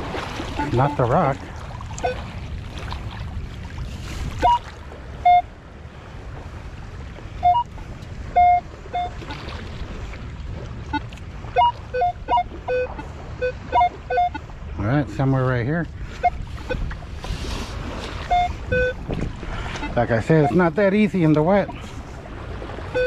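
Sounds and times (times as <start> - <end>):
surf: 0.0 - 23.0
metal detector beeps: 0.6 - 1.1, 4.4 - 4.6, 5.2 - 5.5, 7.4 - 7.7, 8.4 - 9.3, 11.6 - 14.4, 16.2 - 16.8, 18.3 - 19.0, 19.8 - 20.6.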